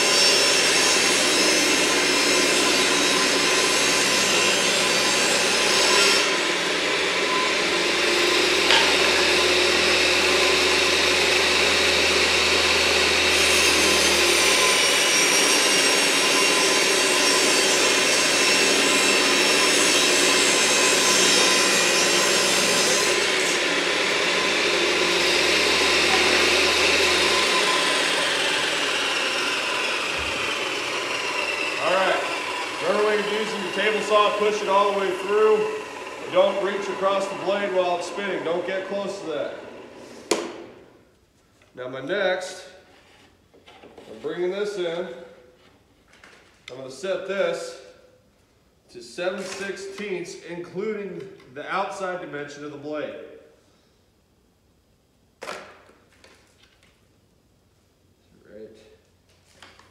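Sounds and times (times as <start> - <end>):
table saw ripping wood: 0.0 - 41.0, 49.2 - 50.4, 55.4 - 56.5.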